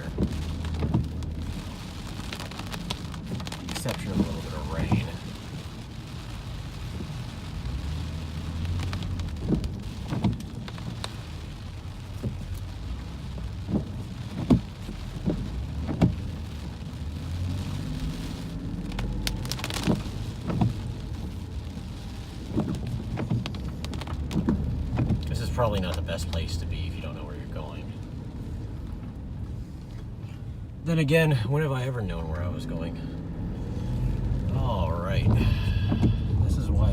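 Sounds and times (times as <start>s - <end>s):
car engine and tyres hum: 0.0s - 36.9s
rain falling on a car: 0.0s - 36.9s.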